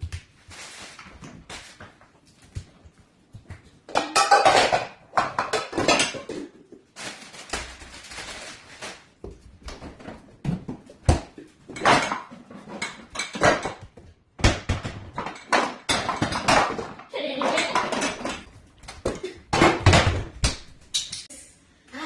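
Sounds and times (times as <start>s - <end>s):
dishes and cutlery clattering: 3.9s - 6.7s, 11.7s - 13.8s, 15.0s - 18.5s.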